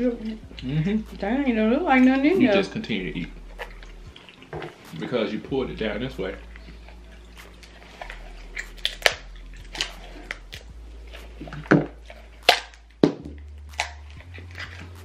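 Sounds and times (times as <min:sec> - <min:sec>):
crab shells cracking: 0:06.4 - 0:15.0.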